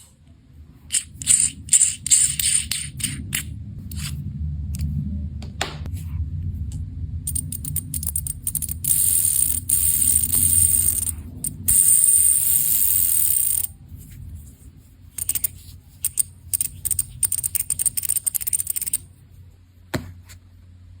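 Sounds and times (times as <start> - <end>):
low hum: 0.0 - 19.8
fidget spinner whirring: 0.9 - 4.2, 7.3 - 13.8, 15.1 - 19.1
rapid mechanical clicks and rattles: 7.3 - 12.3, 15.2 - 19.1.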